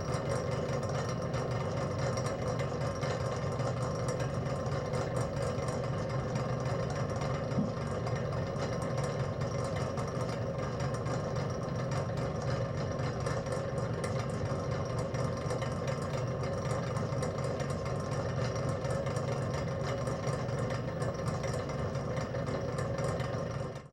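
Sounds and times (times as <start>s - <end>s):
machine humming: 7.3s - 9.1s.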